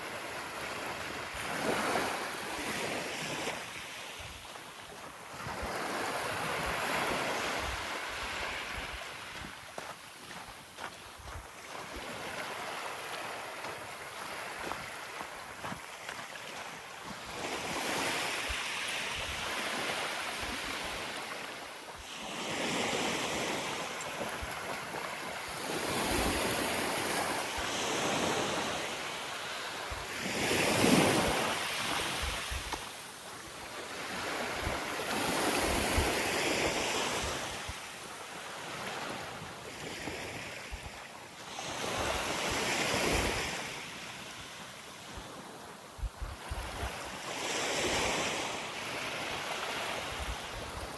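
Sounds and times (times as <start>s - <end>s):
sea waves washing up beach: 0.0s - 50.9s
wind rumble on microphone: 45.1s - 48.1s.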